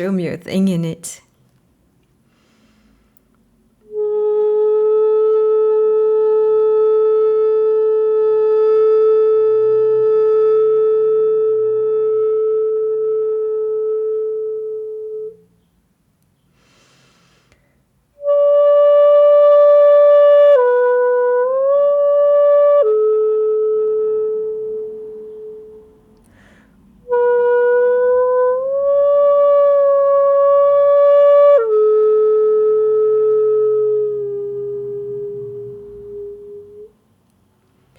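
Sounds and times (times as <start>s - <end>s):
player taking a breath: 2.2s - 3.3s, 16.5s - 17.9s, 26.3s - 26.8s
bamboo flute long notes: 3.8s - 15.5s, 18.2s - 26.2s, 27.0s - 37.0s.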